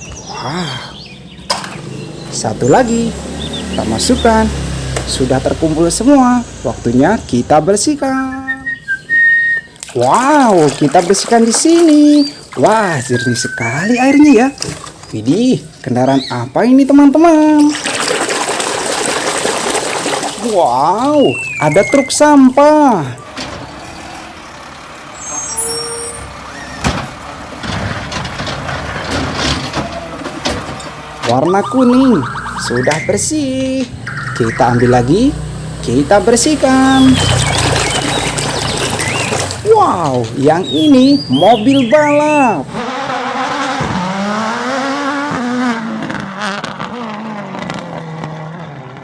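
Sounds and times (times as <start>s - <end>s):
race car engine revving: 1.0s - 7.9s, 27.6s - 49.0s
truck engine running unevenly: 23.0s - 40.4s.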